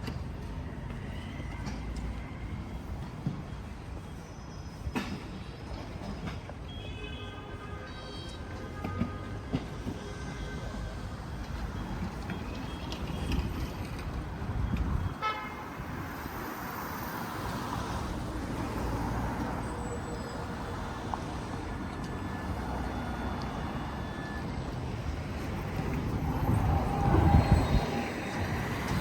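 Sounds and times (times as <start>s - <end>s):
street traffic passing: 0.0s - 29.0s
vehicle horn toot: 15.1s - 15.8s.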